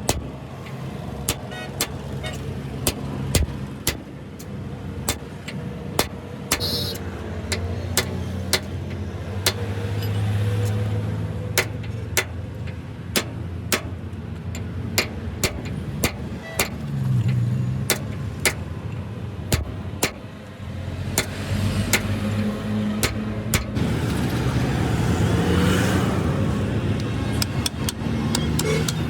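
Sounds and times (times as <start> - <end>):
sharp knocks: 2.8 - 4.1, 5.1 - 9.7, 11.6 - 12.4, 13.1 - 14.0, 15.0 - 18.7, 19.5 - 20.3, 21.2 - 22.4, 23.0 - 23.8.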